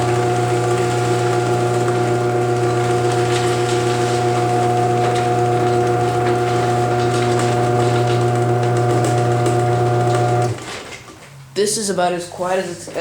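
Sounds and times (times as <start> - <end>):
garage door opener motor humming: 0.0 - 11.1.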